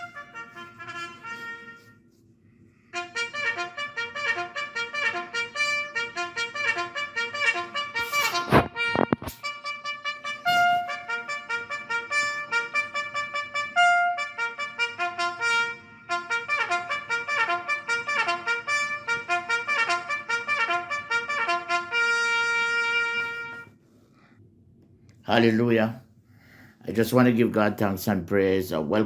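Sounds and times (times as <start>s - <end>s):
trumpet playing a bugle call: 0.0s - 2.1s, 2.9s - 23.8s.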